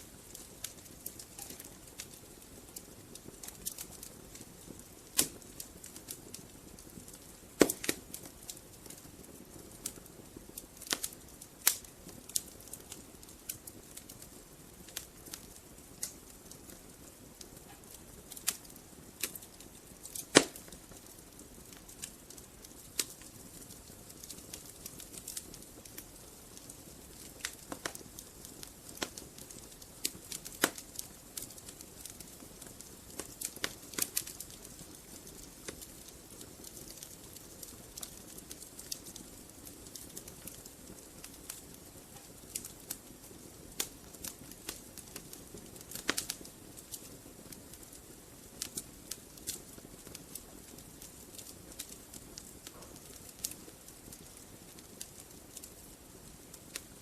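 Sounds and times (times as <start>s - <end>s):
wood fire crackling: 0.0s - 57.0s
logs popping: 7.1s - 8.1s, 20.1s - 21.1s, 30.3s - 30.8s.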